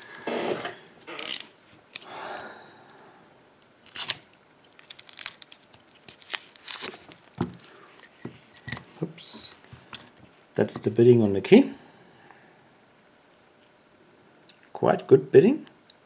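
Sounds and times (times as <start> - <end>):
keys clicking in lock: 8.0 - 11.3.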